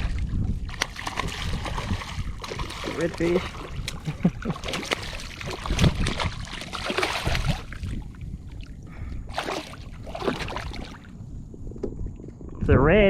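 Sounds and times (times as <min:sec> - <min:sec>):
fish splashing at water surface: 0:00.7 - 0:08.2, 0:09.3 - 0:11.1.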